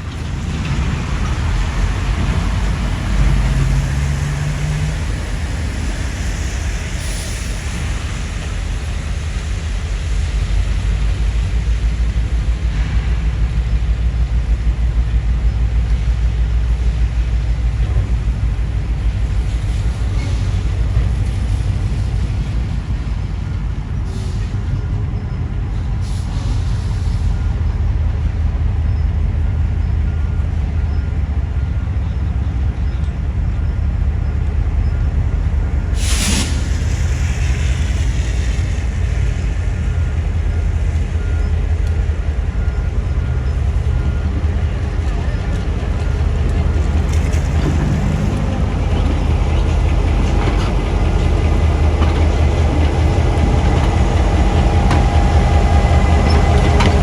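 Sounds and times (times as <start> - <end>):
locomotive diesel engines rumbling: 0.0 - 57.0
short hisses: 36.0 - 38.7.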